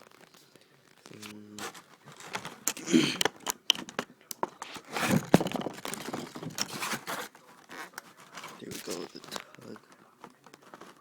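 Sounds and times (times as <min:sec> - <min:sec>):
scraping rustle: 0:00.9 - 0:02.8, 0:04.4 - 0:11.0.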